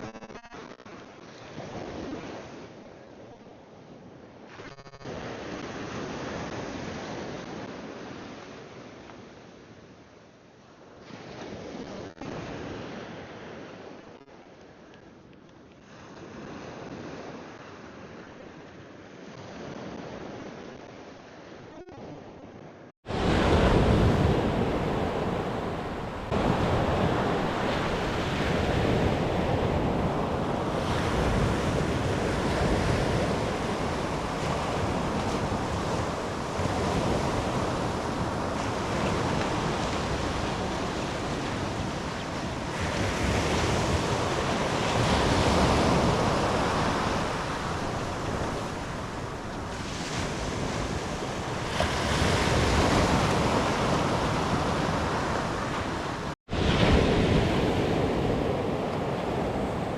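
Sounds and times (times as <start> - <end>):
wind buffeting microphone: 22.3 - 59.9
ocean surf washing on beach: 23.1 - 59.9.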